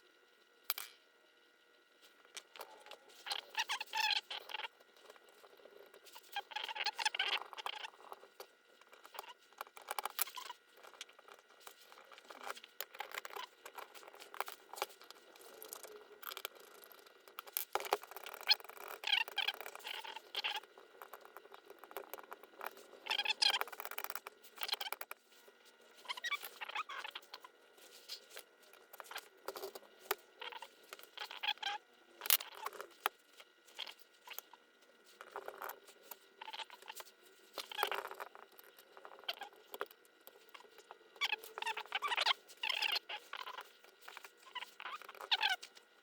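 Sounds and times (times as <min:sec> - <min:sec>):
metal parts scratching and clicking: 0:08.8 - 0:25.2, 0:26.0 - 0:33.1, 0:33.7 - 0:45.8.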